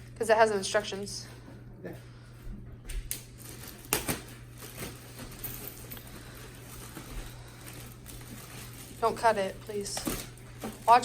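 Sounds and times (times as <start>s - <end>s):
steady low hum: 0.0s - 11.0s
packaging rustling: 3.1s - 11.0s.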